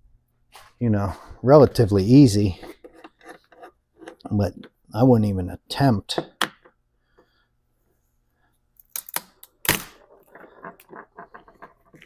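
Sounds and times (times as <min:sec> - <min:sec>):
walnut shell cracking: 0:08.8 - 0:10.0.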